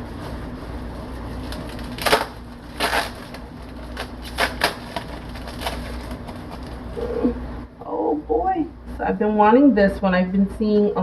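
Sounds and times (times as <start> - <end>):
cardboard box tape being cut: 1.4 - 6.3.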